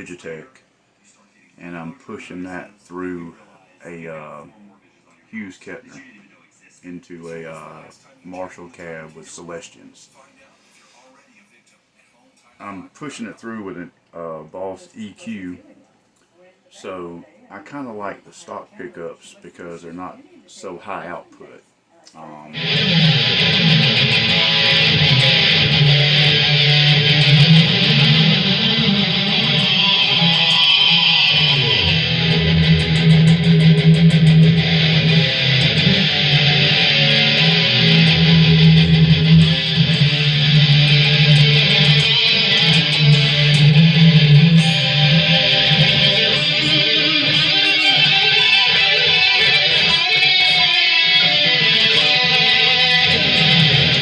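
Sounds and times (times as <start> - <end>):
distorted electric guitar riff: 22.5 - 54.0.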